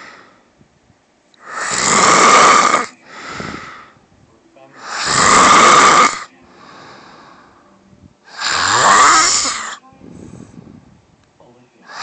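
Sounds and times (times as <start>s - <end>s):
quiet breathing: 0.0s - 0.6s, 2.8s - 4.1s, 6.2s - 8.6s, 9.6s - 11.1s
woman snoring loudly: 1.4s - 3.8s, 4.8s - 7.2s, 8.3s - 9.8s.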